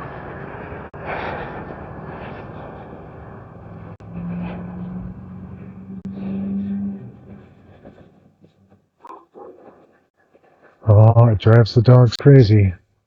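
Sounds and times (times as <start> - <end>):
wind noise: 0.0 - 8.2
drone propeller hum: 0.0 - 10.0.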